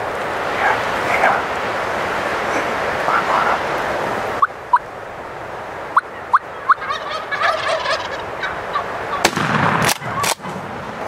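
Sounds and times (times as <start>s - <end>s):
turkeys calling: 4.4s - 4.9s, 5.9s - 10.6s
turkey gobble: 6.0s - 9.3s
shotgun blast: 9.2s - 10.6s.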